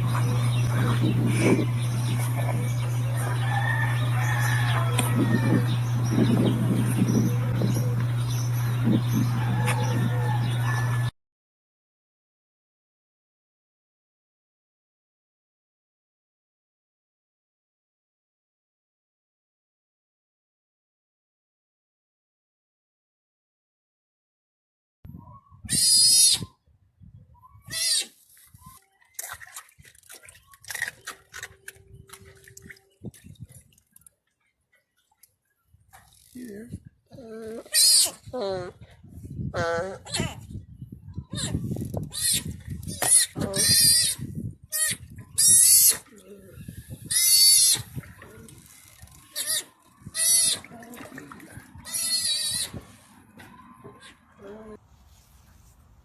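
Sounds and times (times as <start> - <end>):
animal squealing: 25.7 - 26.4, 37.2 - 38.8, 41.3 - 48.6, 49.2 - 51.0, 51.7 - 54.8
rustling: 54.8 - 56.0.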